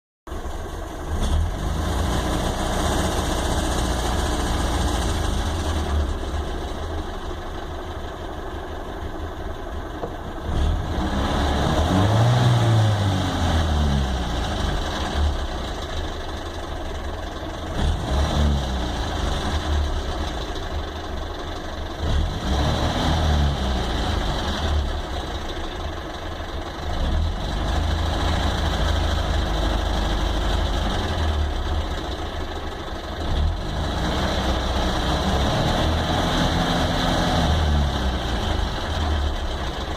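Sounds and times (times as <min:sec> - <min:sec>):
knocking car engine idling: 0:02.4 - 0:10.6, 0:14.1 - 0:18.2, 0:18.8 - 0:22.5, 0:23.7 - 0:33.9, 0:38.0 - 0:39.9.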